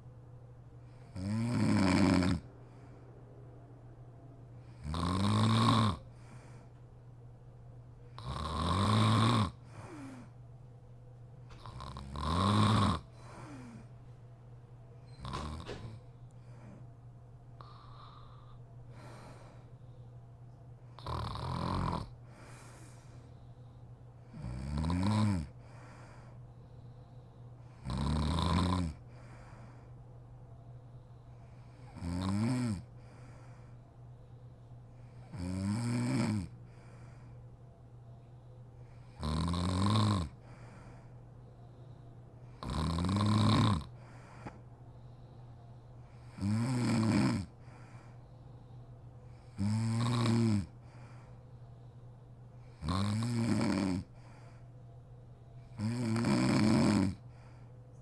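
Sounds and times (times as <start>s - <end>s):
faint low hum: 0.0s - 58.0s
woman snoring: 1.1s - 2.5s, 4.8s - 6.1s, 8.2s - 10.3s, 11.6s - 13.8s, 15.1s - 16.0s, 21.0s - 22.2s, 24.3s - 25.6s, 27.8s - 29.0s, 31.8s - 32.9s, 35.3s - 36.6s, 39.1s - 40.4s, 42.6s - 43.9s, 46.2s - 47.5s, 49.5s - 50.8s, 52.8s - 54.1s, 55.8s - 57.2s.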